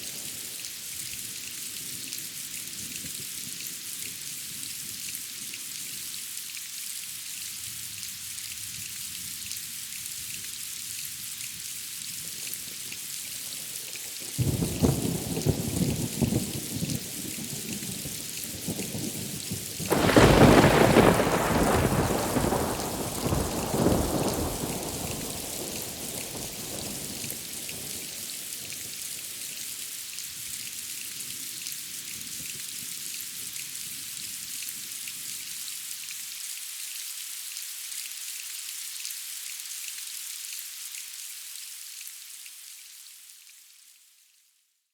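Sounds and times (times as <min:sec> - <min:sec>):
steady rain hissing: 0:00.0 - 0:44.6
thunder rumbling: 0:19.8 - 0:28.1.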